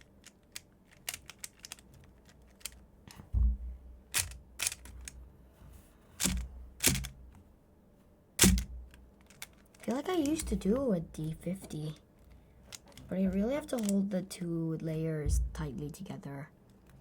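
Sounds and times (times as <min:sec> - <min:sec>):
speed cube clicking: 0:00.0 - 0:02.8, 0:04.1 - 0:05.2, 0:06.2 - 0:07.2, 0:08.4 - 0:14.0
loud knocks: 0:03.3 - 0:03.8, 0:08.4 - 0:09.0.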